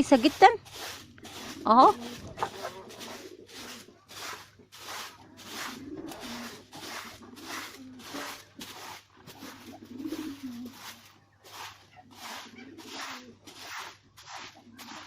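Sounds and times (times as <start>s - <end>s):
broom sweeping concrete: 0.0s - 15.0s
pigeon cooing: 1.3s - 4.0s, 5.2s - 8.6s, 9.3s - 11.0s, 12.4s - 13.5s.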